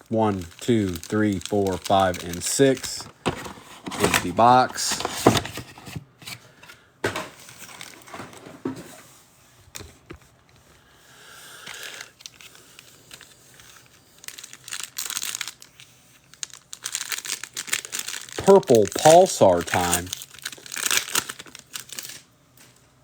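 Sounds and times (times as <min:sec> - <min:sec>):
plastic wrapping crinkling and tearing: 0:00.1 - 0:05.8, 0:07.4 - 0:08.4, 0:11.7 - 0:22.3.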